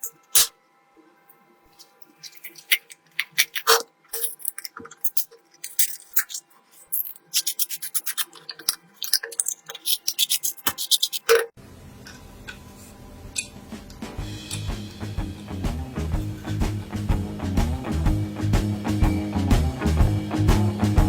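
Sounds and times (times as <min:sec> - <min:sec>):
scratching on a hard surface: 0:01.7 - 0:11.5
background music: 0:13.4 - 0:21.0.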